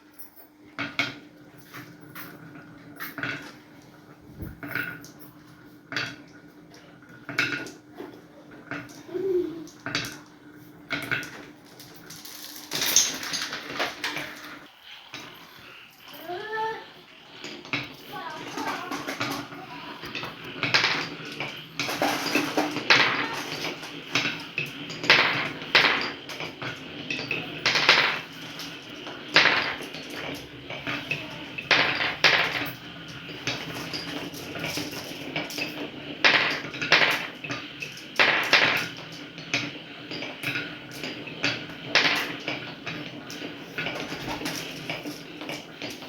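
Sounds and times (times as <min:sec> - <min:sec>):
marbles clattering down track: 0:08.7 - 0:10.3, 0:10.9 - 0:46.0.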